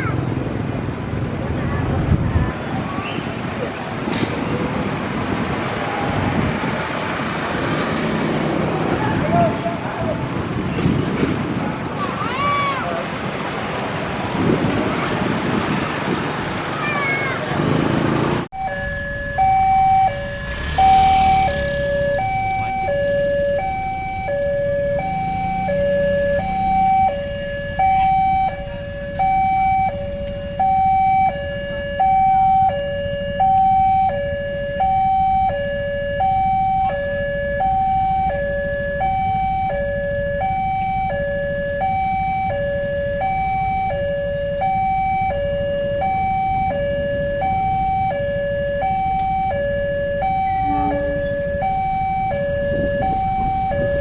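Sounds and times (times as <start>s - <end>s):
two-tone hi-lo siren: 18.5s - 54.0s.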